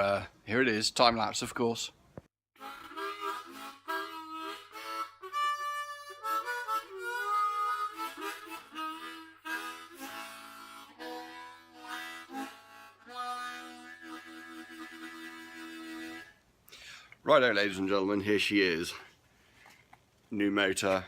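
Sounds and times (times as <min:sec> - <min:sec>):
harmonica playing: 0:02.6 - 0:16.4.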